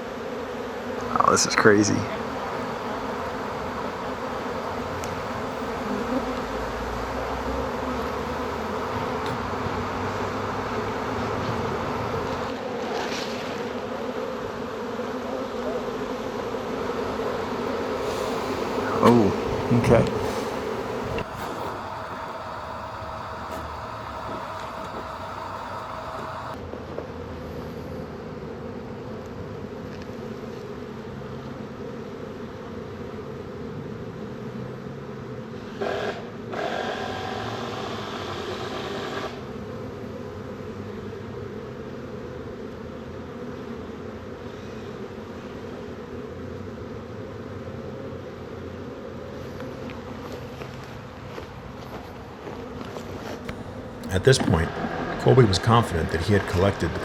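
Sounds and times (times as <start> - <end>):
bee swarm buzzing: 0.0 - 26.6, 28.8 - 57.0.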